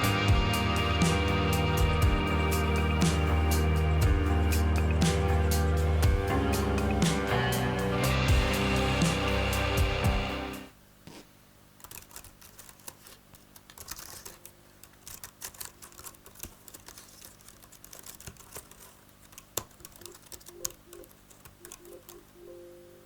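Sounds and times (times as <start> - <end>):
keyboard typing: 11.8 - 23.0.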